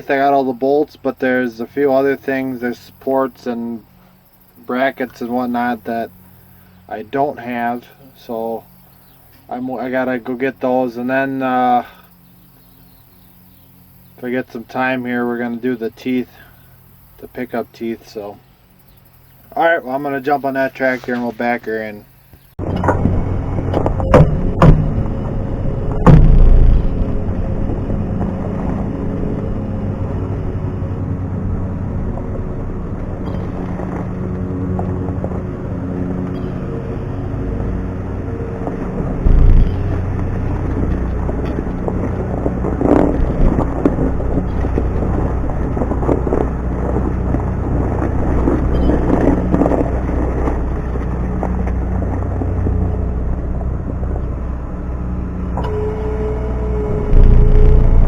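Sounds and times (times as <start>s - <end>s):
tractor engine running: 0.0s - 58.0s
loud clunks: 22.6s - 30.4s, 31.4s - 53.0s, 55.5s - 58.0s.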